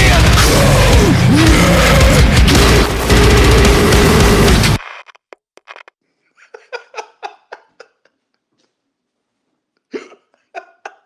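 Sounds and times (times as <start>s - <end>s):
loud music: 0.0s - 4.8s.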